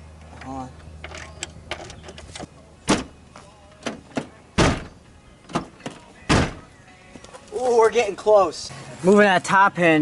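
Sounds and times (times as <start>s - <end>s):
car door thudding shut: 2.8s - 3.2s, 3.9s - 6.7s.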